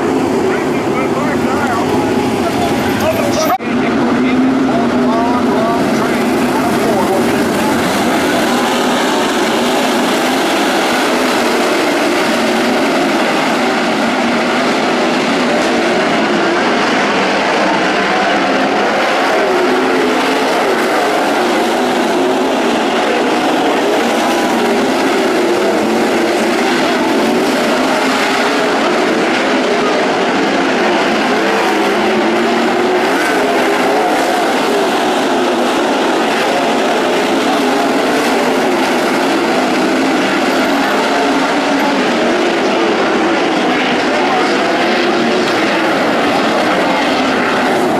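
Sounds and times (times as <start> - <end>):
racing car engines: 0.0 - 47.9.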